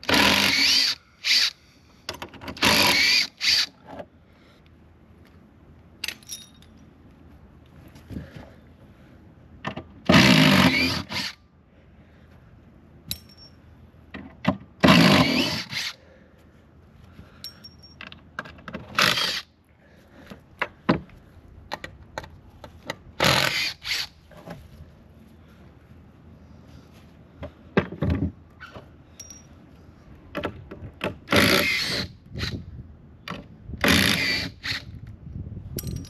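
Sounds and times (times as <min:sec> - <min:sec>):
metal clinks of tools: 0:06.0 - 0:06.9, 0:13.1 - 0:13.6, 0:17.4 - 0:18.1, 0:29.1 - 0:29.6, 0:35.8 - 0:36.0.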